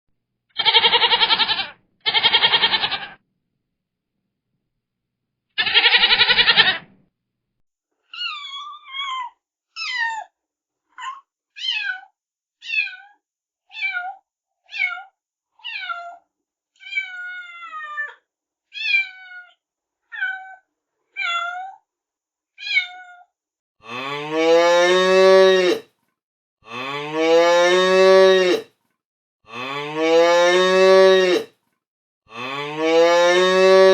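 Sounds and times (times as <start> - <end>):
cat meowing: 0.6 - 3.2, 5.6 - 6.8, 16.8 - 18.0, 18.8 - 19.5, 22.6 - 23.2
goat bleating: 0.6 - 3.2, 5.6 - 6.8
cow mooing: 23.8 - 25.8, 26.7 - 28.7, 29.5 - 31.5, 32.3 - 33.9.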